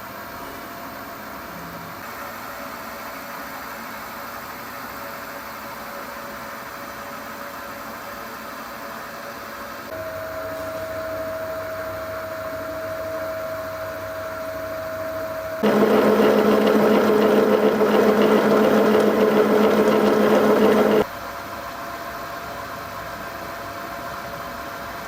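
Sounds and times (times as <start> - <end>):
steady machine whine: 10.0 - 21.1
lathe machine hum: 15.6 - 21.1.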